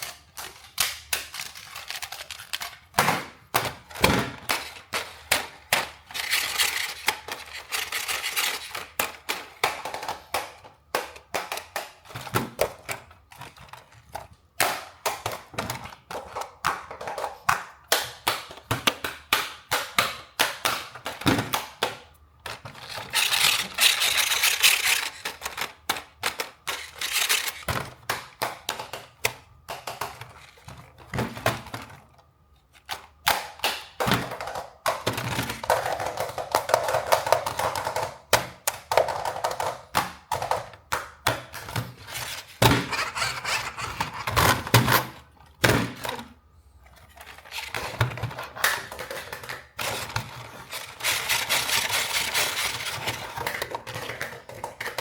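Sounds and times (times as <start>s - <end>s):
plastic toy parts clicking and tapping: 0.0s - 31.0s
packaging crinkling: 22.8s - 25.9s, 26.6s - 27.7s.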